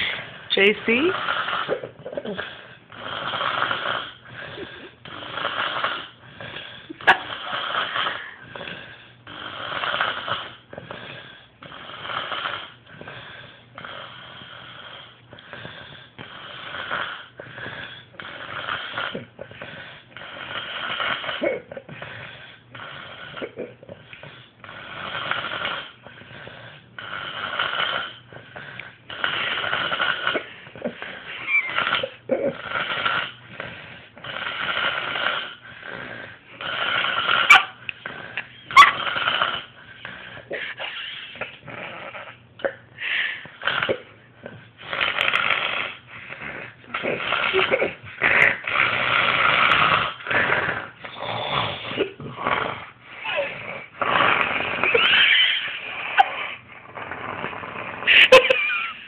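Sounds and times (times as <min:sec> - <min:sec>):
woman snoring: 0:00.0 - 0:13.1, 0:44.8 - 0:58.9.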